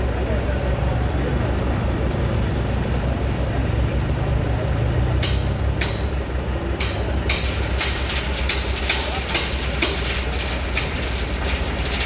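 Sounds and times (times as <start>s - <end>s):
heavy machinery engine droning: 0.0s - 12.0s
sharp knocks: 5.2s - 6.2s.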